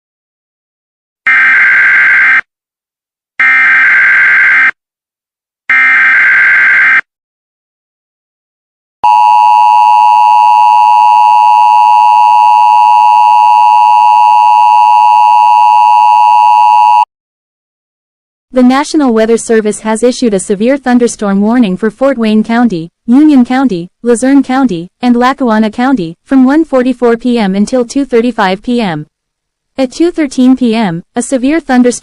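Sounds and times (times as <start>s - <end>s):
two-tone attention signal: 9.0s - 17.1s.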